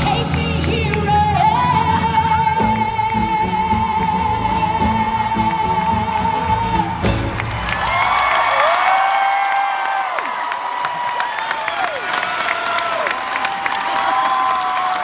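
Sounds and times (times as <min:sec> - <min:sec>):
live band playing: 0:00.0 - 0:08.9
crowd cheering and whooping: 0:05.7 - 0:15.0.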